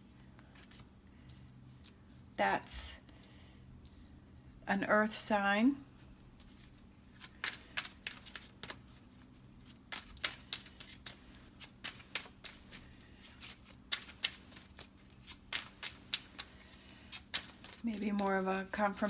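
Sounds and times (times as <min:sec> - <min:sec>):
cards being shuffled: 0:06.4 - 0:19.0.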